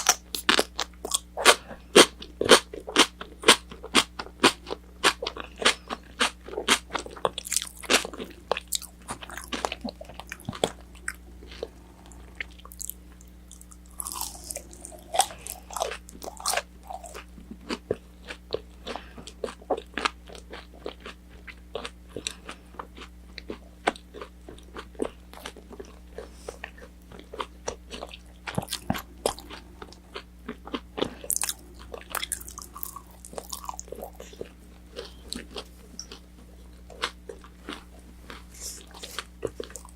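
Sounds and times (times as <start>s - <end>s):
chewing crispy chicken: 0.0s - 39.9s
faint electrical hum: 0.0s - 39.9s.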